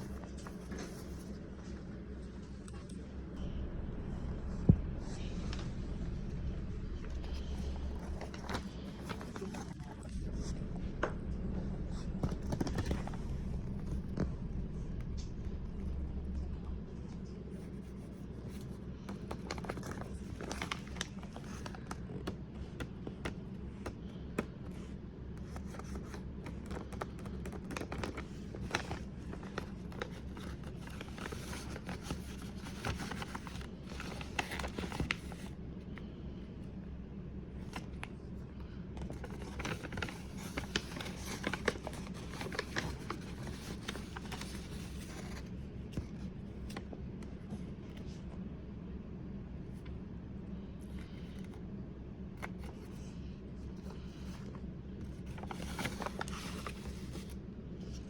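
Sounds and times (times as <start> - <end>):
objects rustling and scraping: 0.0 - 3.5, 4.4 - 15.4, 26.7 - 35.5, 38.6 - 46.9, 52.4 - 58.0
steady low hum: 0.0 - 58.0.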